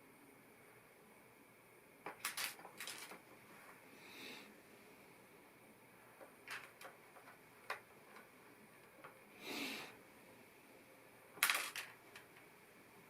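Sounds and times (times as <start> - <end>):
plastic pieces clicking: 2.1 - 3.2, 11.4 - 12.3.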